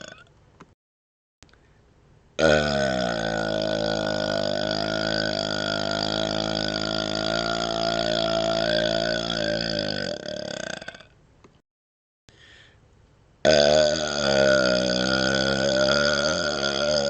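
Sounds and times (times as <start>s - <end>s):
man burping: 0.0s - 0.3s, 2.4s - 11.2s, 13.4s - 17.0s.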